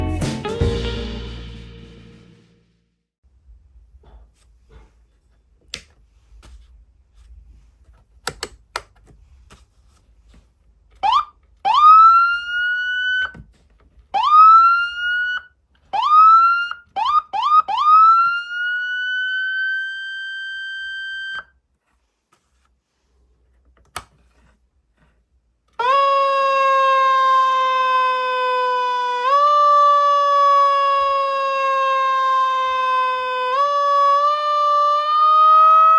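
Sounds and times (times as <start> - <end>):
control switch clicks: 8.2 - 8.9
siren blasts: 11.0 - 13.3, 14.2 - 21.5, 25.8 - 35.9.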